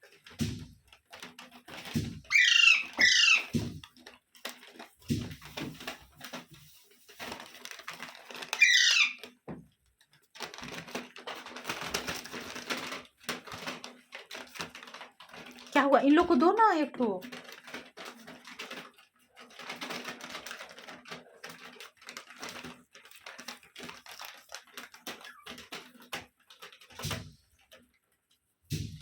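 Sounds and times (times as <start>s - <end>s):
rustling: 0.0s - 29.0s
parrots squawking: 2.3s - 3.7s, 8.5s - 9.3s.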